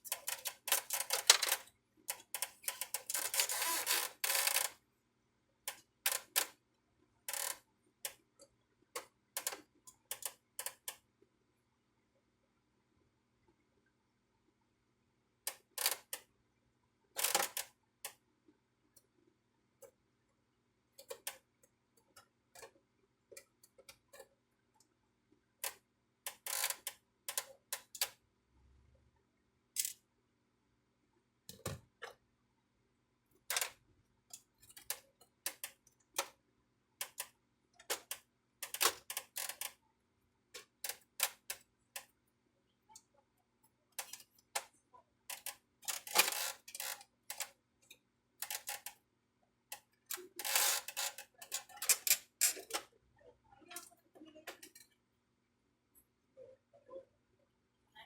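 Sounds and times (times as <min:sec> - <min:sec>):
plastic parts clicking and snapping: 0:00.0 - 0:04.7, 0:45.3 - 0:49.0.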